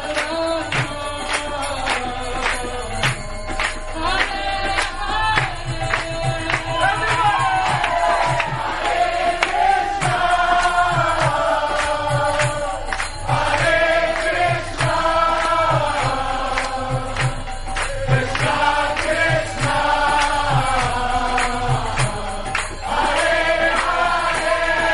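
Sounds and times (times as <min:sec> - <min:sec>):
sharp percussion strokes: 0:00.0 - 0:24.9
group chanting in chorus: 0:04.0 - 0:24.9
low drum beat: 0:09.5 - 0:22.4.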